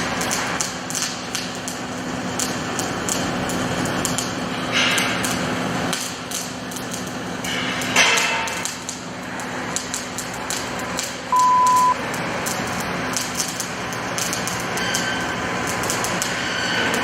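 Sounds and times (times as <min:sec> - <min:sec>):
high electronic beep: 0:11.3 - 0:12.0.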